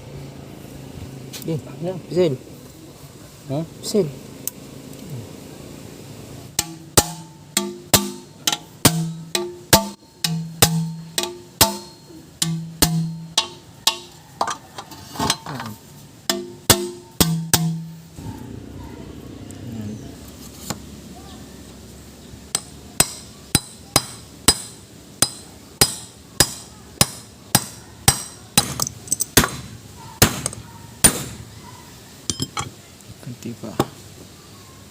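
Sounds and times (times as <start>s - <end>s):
hammer tapping on metal: 6.6s - 14.6s, 16.2s - 18.0s, 22.5s - 31.4s.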